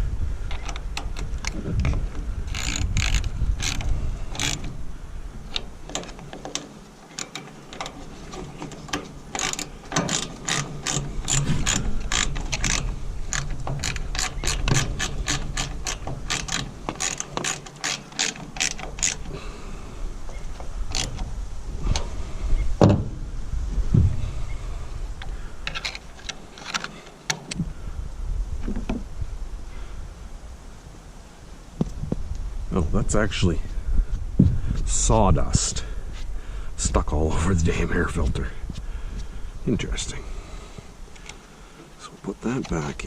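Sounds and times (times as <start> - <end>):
ratchet wrench clicking: 2.5 - 4.7, 5.5 - 19.3.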